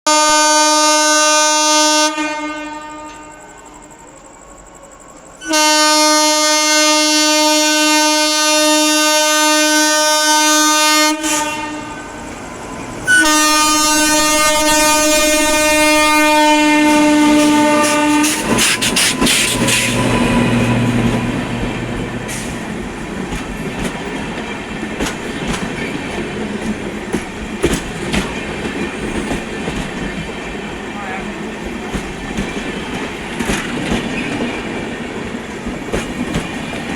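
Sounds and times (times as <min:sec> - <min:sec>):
twin-tone locomotive horn: 0:00.1 - 0:12.4, 0:13.0 - 0:22.8
train wheels clattering on rails: 0:11.2 - 0:36.9.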